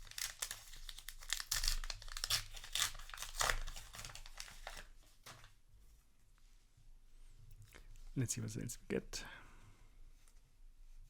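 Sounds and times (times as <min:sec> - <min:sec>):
foil wrapper crinkling and tearing: 0:00.0 - 0:05.4.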